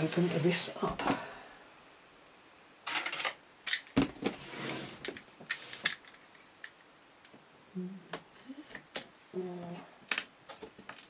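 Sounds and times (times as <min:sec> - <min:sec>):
cardboard scraping and rustling: 0:04.2 - 0:05.8.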